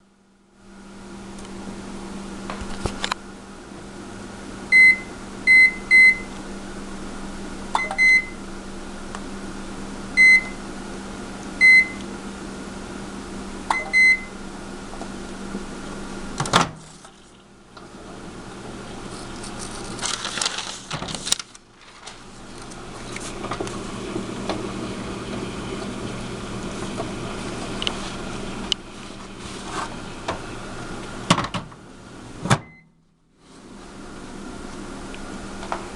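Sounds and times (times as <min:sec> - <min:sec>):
microwave oven humming: 0:00.0 - 0:35.9
microwave click: 0:07.7 - 0:08.4, 0:13.7 - 0:14.3.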